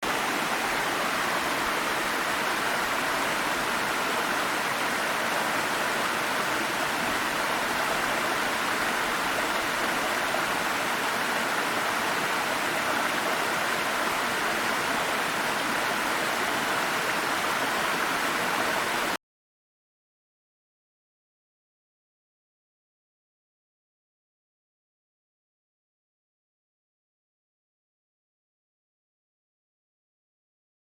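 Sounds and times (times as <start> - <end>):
waterfall roaring: 0.0 - 19.2.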